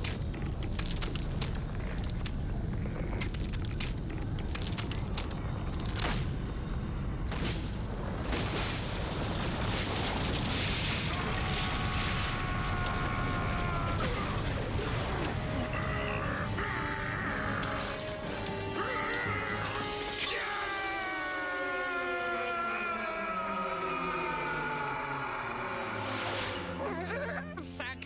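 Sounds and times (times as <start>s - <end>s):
sharp cracks: 0.0s - 6.4s, 7.3s - 20.5s
rumble of explosions: 0.0s - 26.6s.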